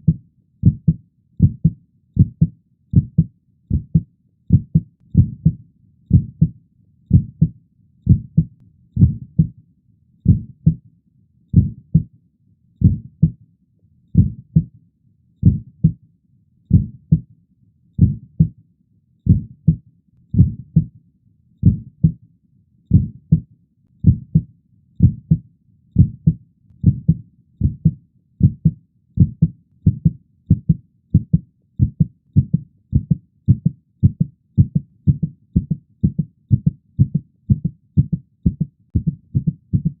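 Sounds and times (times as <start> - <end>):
heartbeat thumps: 0.0 - 6.5, 7.1 - 7.5, 8.1 - 9.6, 10.3 - 10.8, 11.6 - 12.1, 12.8 - 13.4, 14.2 - 14.7, 15.4 - 16.0, 16.7 - 17.3, 18.0 - 18.6, 19.3 - 19.8, 20.4 - 20.9, 21.6 - 22.2, 22.9 - 25.4, 26.0 - 40.0.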